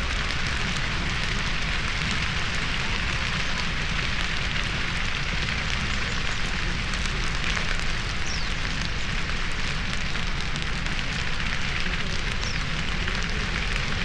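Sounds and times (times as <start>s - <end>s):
fire hiss: 0.0s - 14.0s
grass fire crackling: 0.0s - 14.0s.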